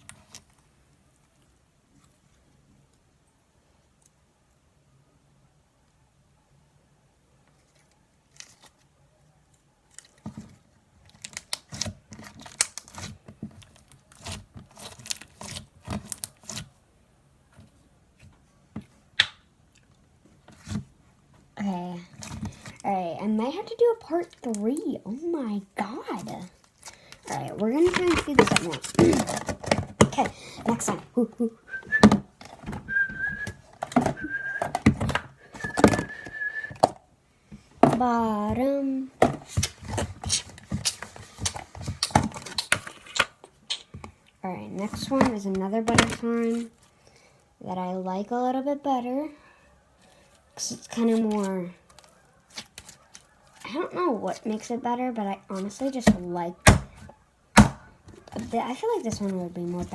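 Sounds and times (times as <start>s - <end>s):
person whistling: 31.7s - 32.1s, 32.8s - 34.8s, 35.4s - 36.8s
slime squelching and popping: 39.5s - 44.2s.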